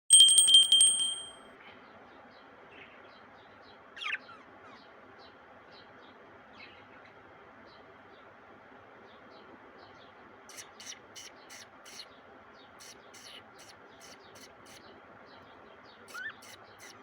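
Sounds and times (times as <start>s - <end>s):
high ringing tone: 0.1s - 1.3s.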